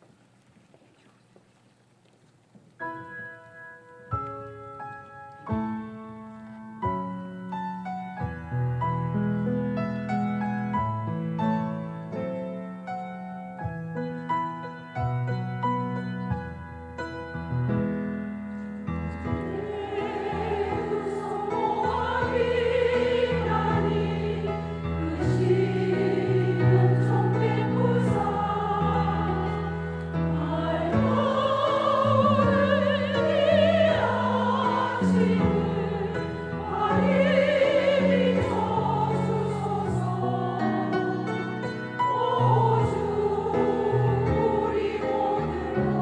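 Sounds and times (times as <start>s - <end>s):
piano accompaniment: 2.7s - 46.0s
choir singing: 19.2s - 46.0s.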